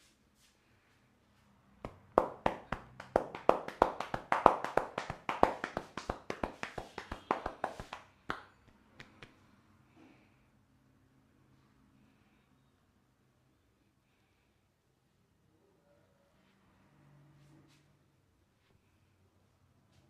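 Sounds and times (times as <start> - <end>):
hand taps: 1.8 - 9.4
hands slapping rhythmically: 1.8 - 9.4.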